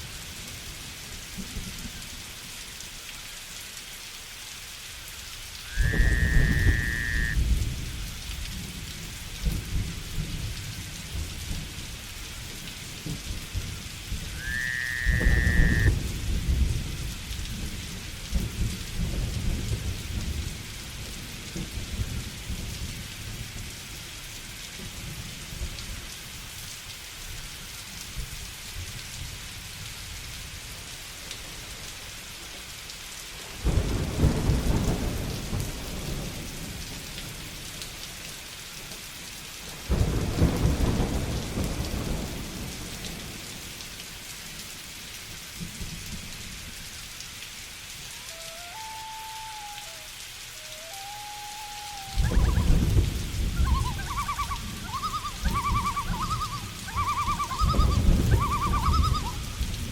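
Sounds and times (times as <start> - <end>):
steady rain: 0.0 - 59.9
thunder rumbling: 5.7 - 8.8, 13.0 - 22.7, 50.8 - 59.9
thunderclaps: 52.2 - 59.9.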